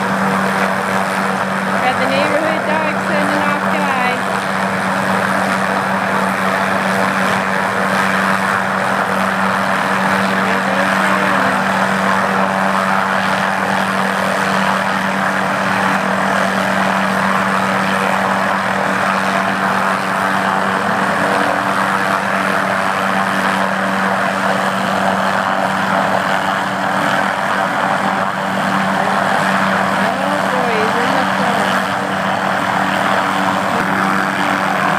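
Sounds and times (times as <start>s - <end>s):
helicopter engine and rotors: 0.0s - 34.9s.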